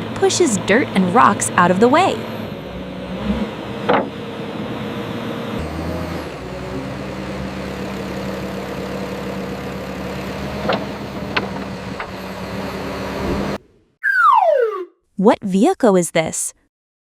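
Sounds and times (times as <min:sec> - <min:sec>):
bulldozer diesel engine running: 0:00.0 - 0:13.6.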